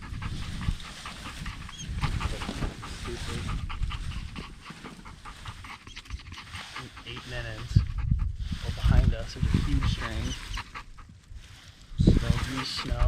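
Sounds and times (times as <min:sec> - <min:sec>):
dog panting: 0:00.0 - 0:11.4, 0:12.0 - 0:13.0.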